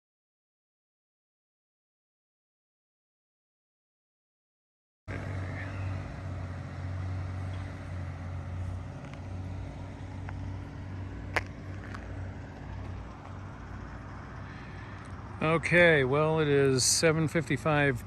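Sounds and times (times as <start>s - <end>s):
vehicle engine idling: 5.1s - 18.0s.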